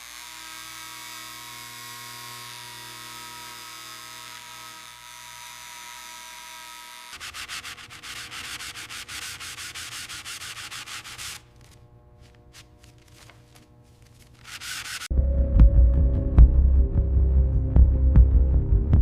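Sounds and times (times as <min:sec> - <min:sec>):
rapid sanding strokes: 0:07.1 - 0:15.1
rubbing: 0:07.1 - 0:15.1
loud low throbbing hum: 0:15.1 - 0:19.0.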